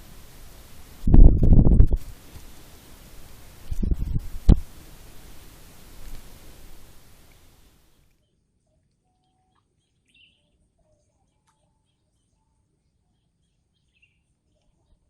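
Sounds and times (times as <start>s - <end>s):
faint birds chirping: 2.5s - 15.0s.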